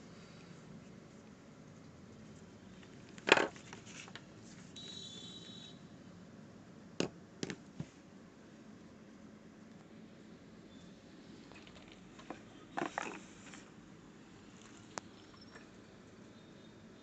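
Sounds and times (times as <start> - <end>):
faint squeak: 14.8 - 16.9.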